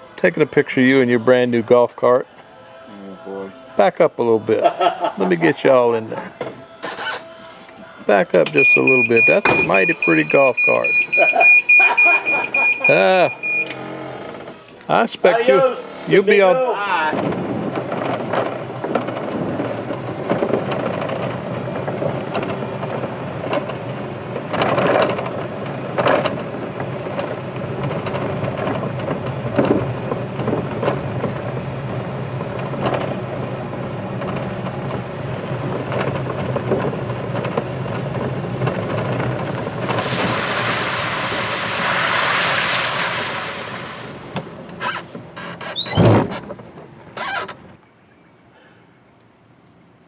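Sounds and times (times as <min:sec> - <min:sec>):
golf cart motor humming: 0:08.1 - 0:42.4, 0:43.1 - 0:47.8
rumbling noise: 0:17.0 - 0:44.7
loud hiss: 0:40.0 - 0:44.2.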